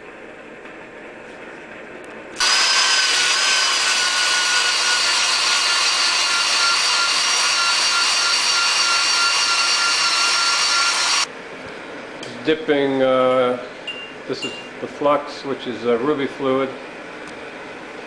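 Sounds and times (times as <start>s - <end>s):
motor whine: 2.4s - 11.3s
wire wheel rasping on metal: 2.4s - 11.3s.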